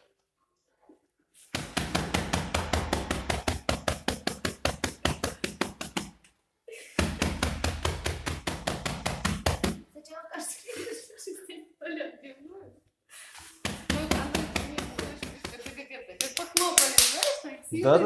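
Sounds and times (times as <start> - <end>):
percussive massage strikes: 1.6 - 6.3, 7.0 - 9.9, 13.6 - 17.3.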